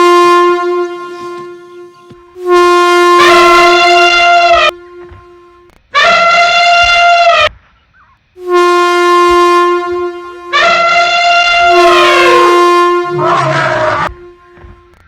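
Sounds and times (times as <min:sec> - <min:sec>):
train horn blasts: 0:00.0 - 0:07.5, 0:08.4 - 0:15.0
short rumbling noise: 0:08.4 - 0:15.0
elephant trumpeting: 0:09.8 - 0:14.7.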